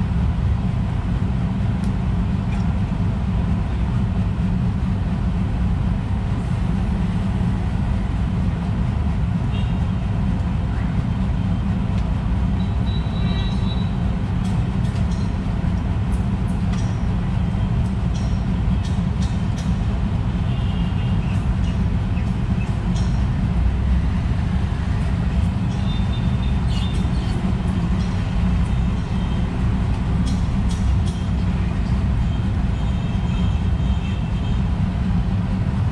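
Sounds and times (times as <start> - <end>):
steady low rumble: 0.0 - 35.9
small birds chirping: 21.0 - 23.2, 25.4 - 32.1.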